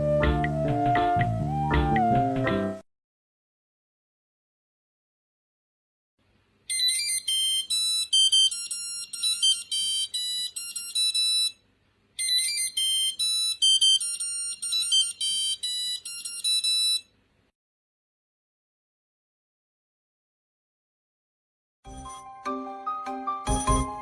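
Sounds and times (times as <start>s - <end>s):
mobile phone ringtone: 6.7s - 11.6s, 12.2s - 17.1s, 21.9s - 24.0s.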